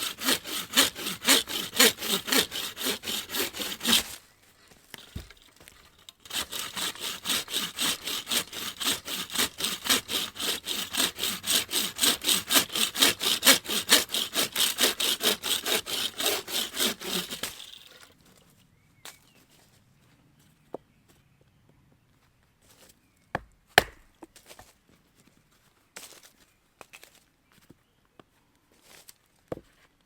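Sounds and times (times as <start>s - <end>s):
bucksaw cutting wood: 0.0s - 4.2s, 4.9s - 18.1s, 23.8s - 24.0s.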